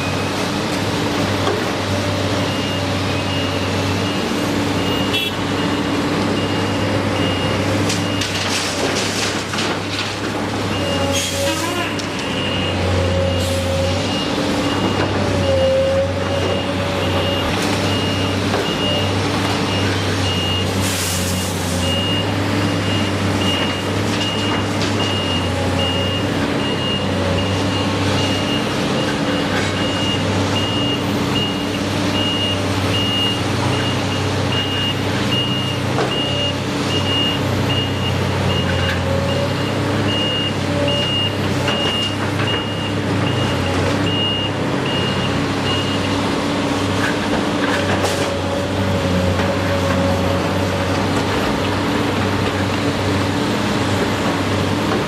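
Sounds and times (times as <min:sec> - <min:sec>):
heavy machine engine hum: 0:00.0 - 0:55.0
reverse alarm beeping: 0:02.5 - 0:08.3, 0:21.8 - 0:46.2.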